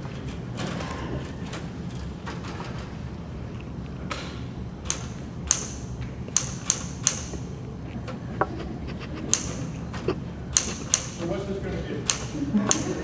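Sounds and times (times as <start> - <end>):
typewriter keys clacking: 4.8 - 7.5, 9.3 - 11.3, 12.0 - 13.0.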